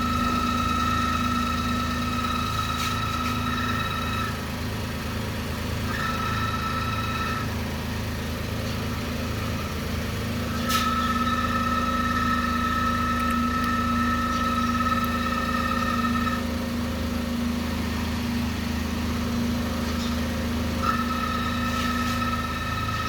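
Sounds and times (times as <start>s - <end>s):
car engine idling: 0.0s - 23.0s
high-pitched buzzing tone: 10.5s - 16.5s, 20.8s - 23.0s.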